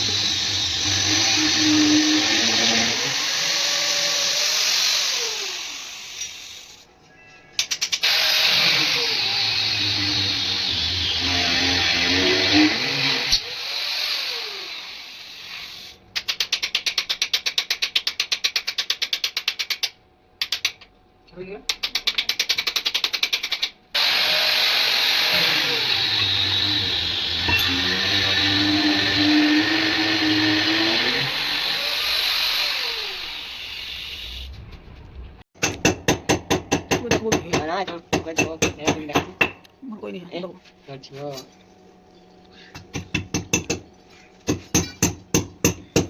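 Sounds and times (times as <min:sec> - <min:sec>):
power tool running: 0:00.0 - 0:06.9, 0:08.0 - 0:16.0, 0:23.9 - 0:34.5
rapid mechanical clicks: 0:21.7 - 0:23.8.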